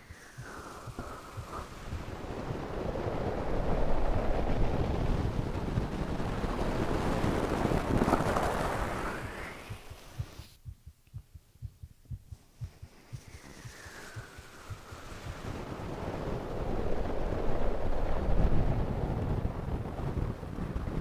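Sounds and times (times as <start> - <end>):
rushing breath: 0.0 - 2.2, 12.3 - 16.2
heartbeat thumps: 0.0 - 3.0, 7.3 - 16.4.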